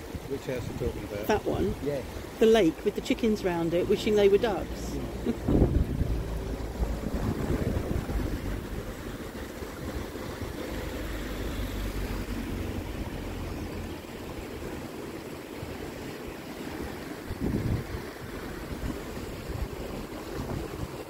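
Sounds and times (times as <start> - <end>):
low rumble with rushing hiss: 0.0 - 16.0.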